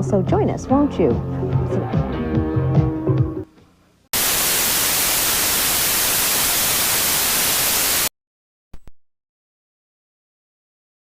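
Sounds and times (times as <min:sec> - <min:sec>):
television static hiss: 0:04.2 - 0:08.1.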